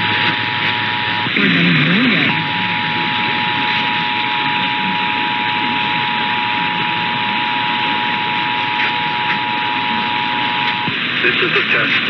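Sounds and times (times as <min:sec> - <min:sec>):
two-tone alarm: 0:00.0 - 0:11.1
radio static hiss: 0:00.0 - 0:12.0.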